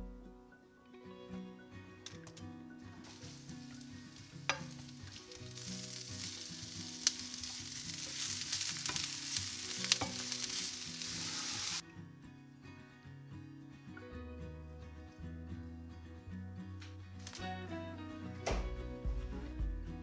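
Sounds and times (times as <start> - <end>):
soft background music: 0.0 - 20.0
food sizzling in a frying pan: 3.0 - 11.8.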